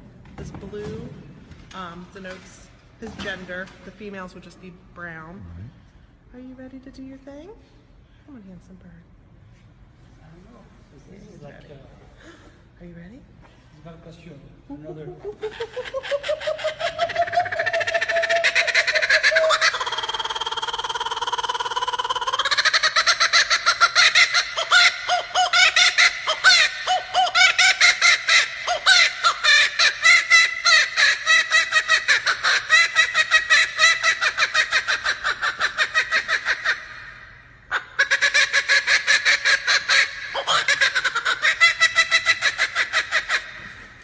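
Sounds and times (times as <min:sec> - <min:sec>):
kookaburra laughing call: 0:14.9 - 0:43.8.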